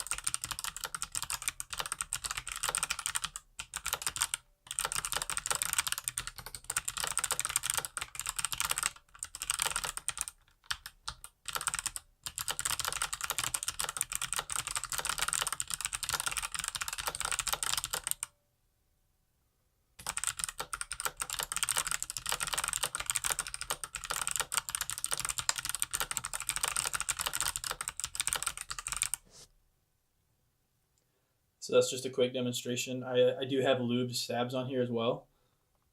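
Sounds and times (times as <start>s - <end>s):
typing on mechanical keyboard: 0.0s - 18.3s, 20.0s - 29.2s.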